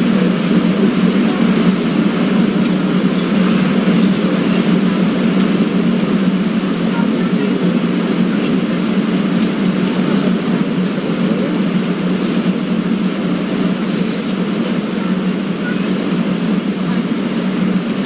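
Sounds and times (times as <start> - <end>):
airliner cabin hum: 0.0 - 18.0.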